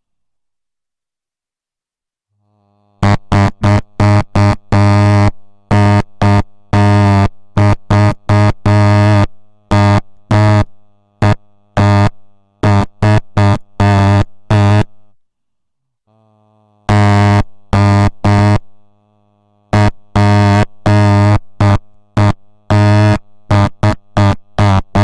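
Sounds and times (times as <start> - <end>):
faint steady hum: 2.4 - 25.0
harsh buzzing tone pulses: 2.6 - 15.2, 16.2 - 25.0.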